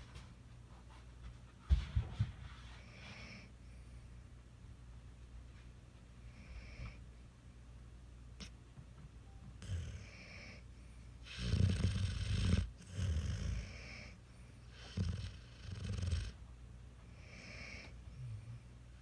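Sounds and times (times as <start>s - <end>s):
puppy snoring: 9.6s - 10.6s, 11.2s - 16.4s, 17.2s - 18.5s.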